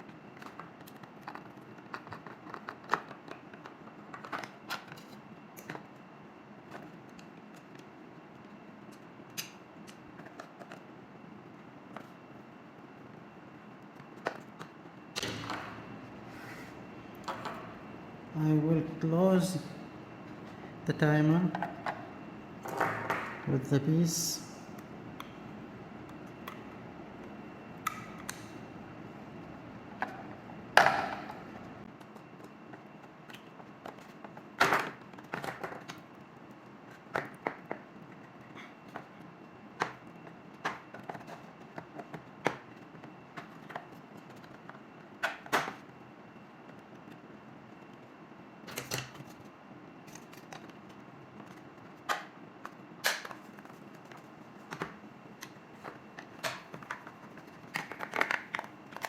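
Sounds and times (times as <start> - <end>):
plastic parts clicking and knocking: 0.4 - 5.9, 50.1 - 59.0.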